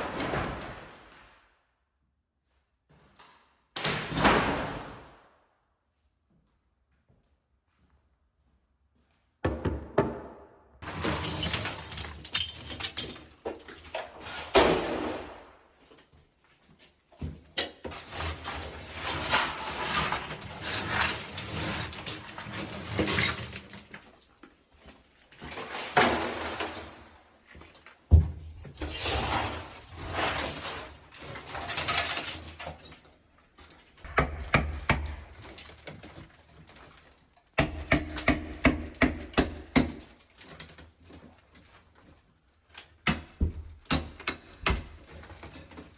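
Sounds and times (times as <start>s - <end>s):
broken tile clattering down: 10.8s - 13.9s
hammers striking tile: 34.1s - 35.4s, 37.6s - 40.1s, 43.0s - 45.1s.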